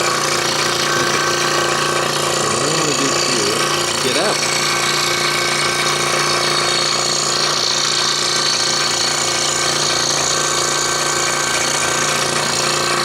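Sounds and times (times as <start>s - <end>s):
scroll saw cutting wood: 0.0s - 13.0s.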